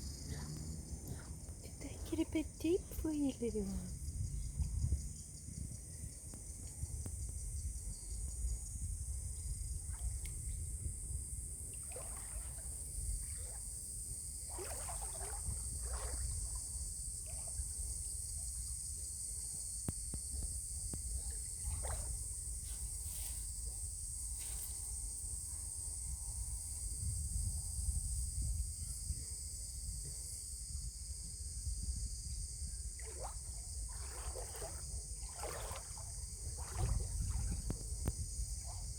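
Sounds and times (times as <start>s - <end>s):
high insect chorus: 0.0s - 38.9s
creek water sloshing and trickling: 9.2s - 19.4s, 21.0s - 25.0s, 32.8s - 38.9s.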